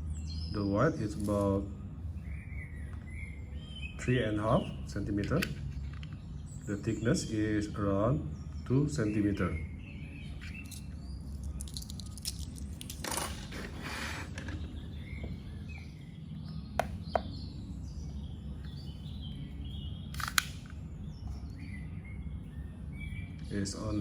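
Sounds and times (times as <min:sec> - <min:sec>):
low background hum: 0:00.0 - 0:24.0
sharp clicks: 0:20.1 - 0:20.8.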